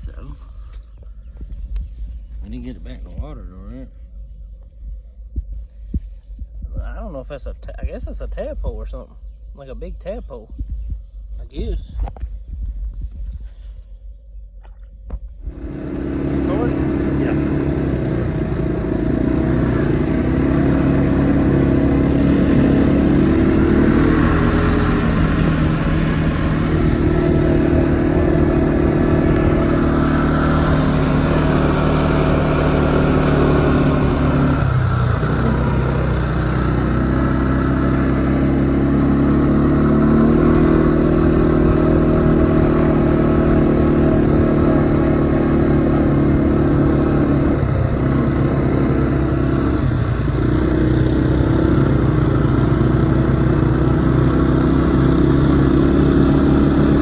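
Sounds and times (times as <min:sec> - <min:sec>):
small vehicle engine running: 0:15.2 - 0:57.0.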